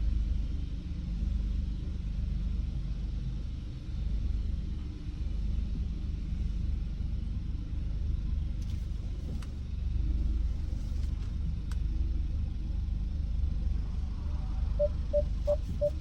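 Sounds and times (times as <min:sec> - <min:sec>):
car rumbling from inside cabin: 0:14.3 - 0:16.0.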